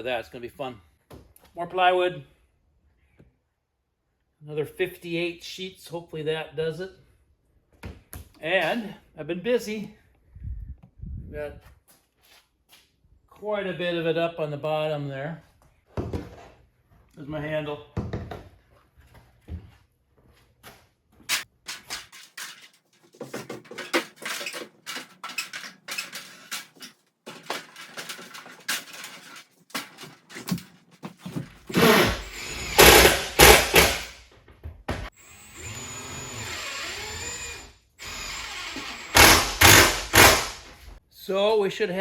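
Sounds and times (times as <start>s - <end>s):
knocks and clatters: 21.3s - 31.8s
power tool whirring: 31.7s - 34.2s, 35.2s - 40.8s.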